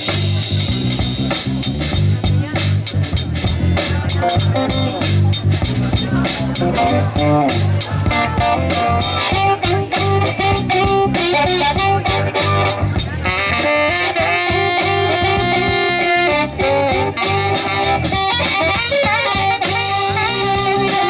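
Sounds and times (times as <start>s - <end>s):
blues band playing: 0.0s - 21.0s
held electric guitar lead note: 6.6s - 21.0s.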